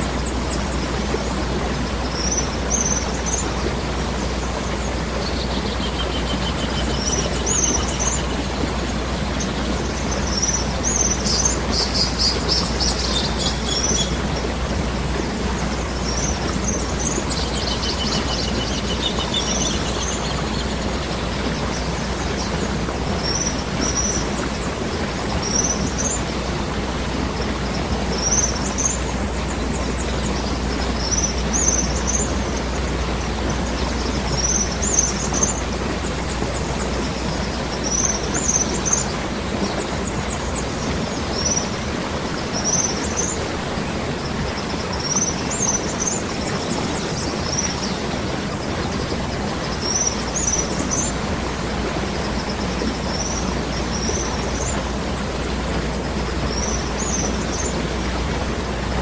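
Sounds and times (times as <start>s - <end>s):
birds chirping: 0.0s - 59.0s
waterfall rushing: 0.0s - 59.0s.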